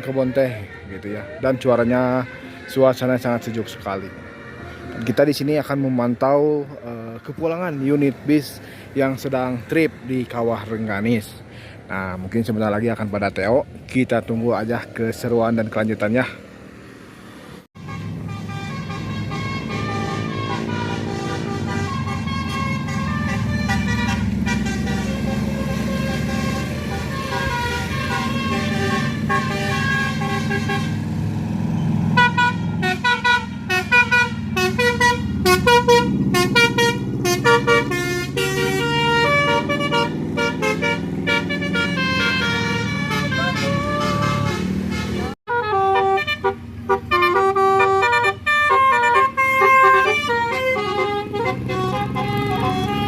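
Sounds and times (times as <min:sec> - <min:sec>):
bus air horns tooting a tune: 0:00.0 - 0:03.7, 0:17.8 - 0:31.1, 0:32.1 - 0:53.0
bus engine running: 0:16.4 - 0:53.0.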